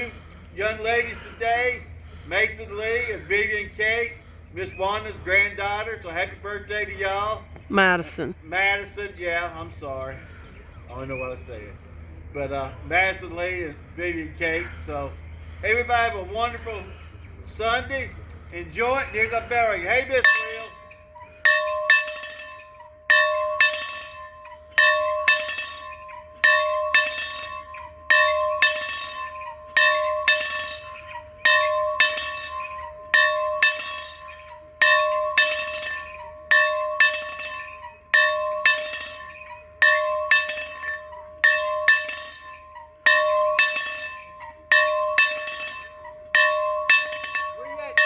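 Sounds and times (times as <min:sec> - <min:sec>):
church bell ringing: 0:20.2 - 0:48.0.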